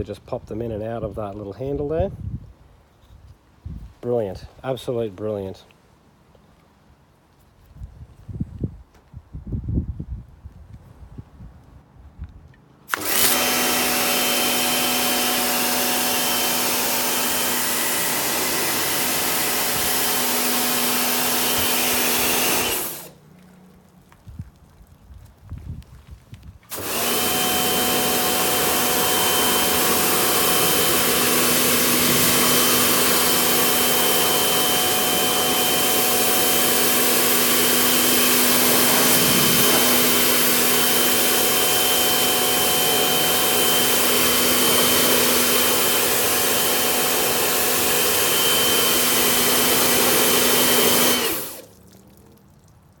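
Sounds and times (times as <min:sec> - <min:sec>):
pressure washer motor whine: 0:12.9 - 0:23.2, 0:26.7 - 0:51.7
water spraying hiss: 0:27.8 - 0:41.4.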